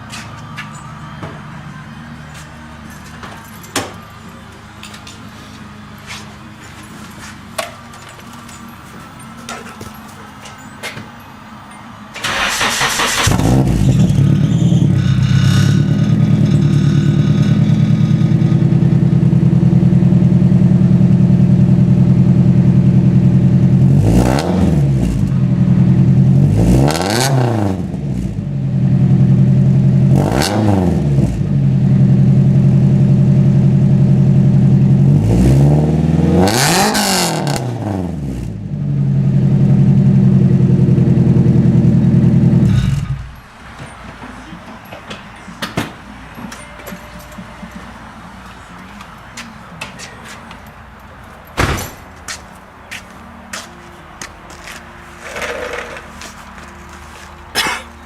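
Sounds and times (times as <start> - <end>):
engine revving: 12.2 - 28.4, 30.0 - 31.5, 34.9 - 43.4.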